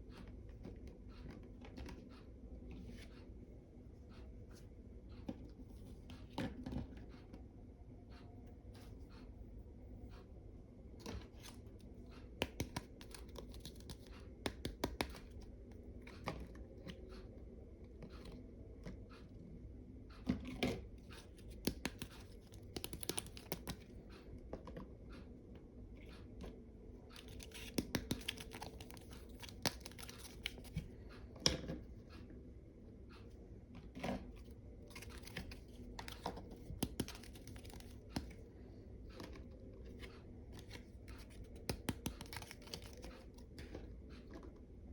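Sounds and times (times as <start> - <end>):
low steady hum: 0.0 - 44.9.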